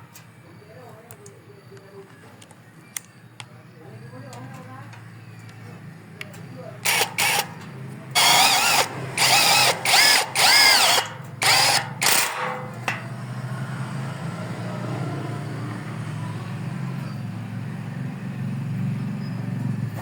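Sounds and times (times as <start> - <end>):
power tool motor bursts: 6.8 - 12.6.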